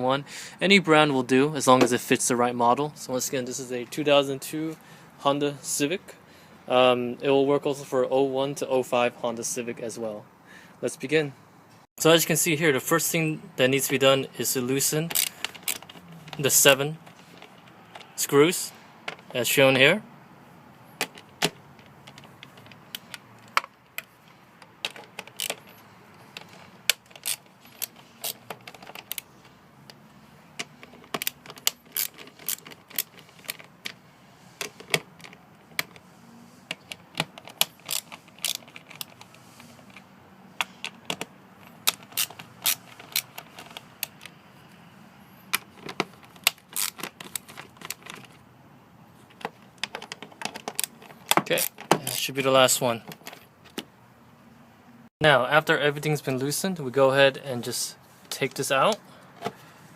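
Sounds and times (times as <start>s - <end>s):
socket ratchet clicking: 15.1s - 16.0s, 21.0s - 30.0s, 30.6s - 34.0s, 36.7s - 40.0s, 40.6s - 44.4s, 45.5s - 48.4s.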